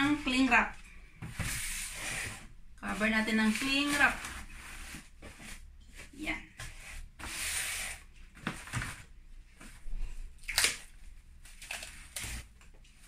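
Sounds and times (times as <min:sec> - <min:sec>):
plastic cling wrap crinkling: 0:11.5 - 0:12.3.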